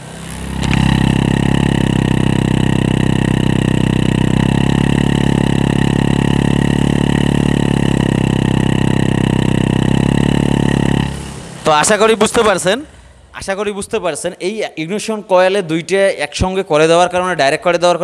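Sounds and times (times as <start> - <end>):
motorcycle engine revving: 0.0 - 13.8.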